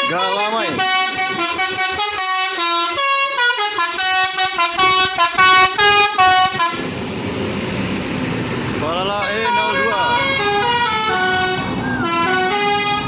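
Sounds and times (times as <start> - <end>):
musical bus horn: 0.0 - 6.9, 9.2 - 13.0
noisy rumble: 4.9 - 13.0.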